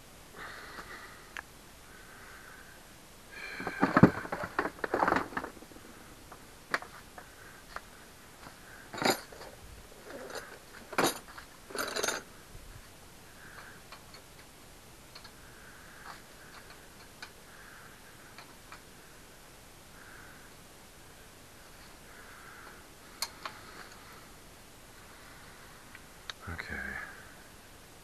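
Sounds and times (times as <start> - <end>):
metal tools clinking: 8.9 - 12.3.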